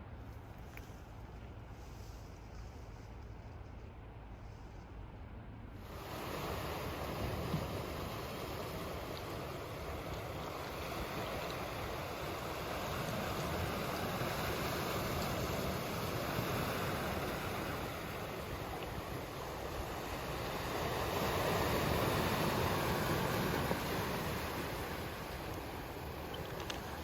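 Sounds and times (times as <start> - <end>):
sea waves washing in: 5.8 - 27.0.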